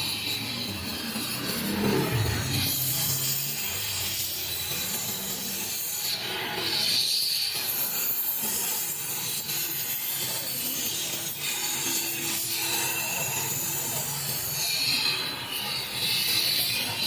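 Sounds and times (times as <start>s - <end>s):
hand tool scraping hard surface: 0.0s - 8.9s.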